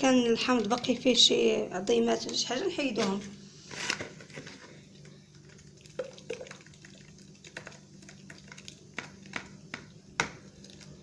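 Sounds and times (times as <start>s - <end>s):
juice dripping through a sieve: 5.0s - 11.0s.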